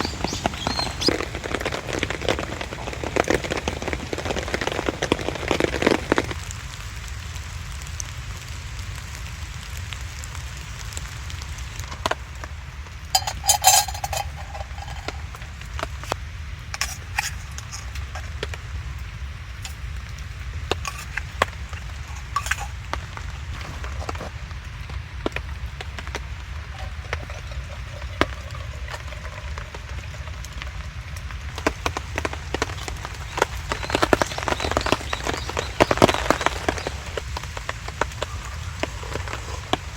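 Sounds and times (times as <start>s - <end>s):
ringing metal clink: 13.2s - 15.4s
camp cookware clicks and knocks: 13.2s - 18.6s, 20.6s - 24.3s.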